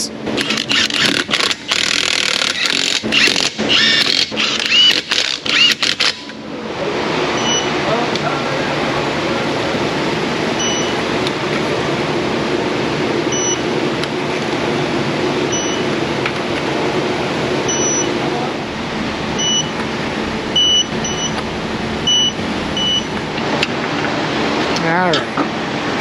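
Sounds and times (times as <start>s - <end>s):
rushing background noise: 5.4s - 26.0s
high-pitched electronic beeps: 17.7s - 18.1s, 19.3s - 19.8s, 20.4s - 23.2s.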